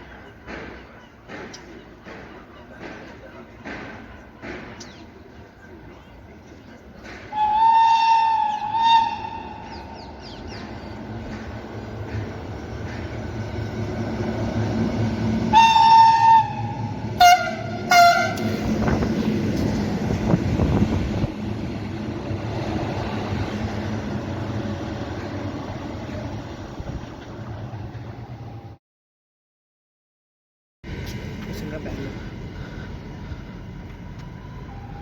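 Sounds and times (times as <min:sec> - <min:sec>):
freight train rumbling past: 0:00.0 - 0:28.8, 0:30.8 - 0:35.0
locomotive horn blasts: 0:07.3 - 0:09.7, 0:15.5 - 0:18.6.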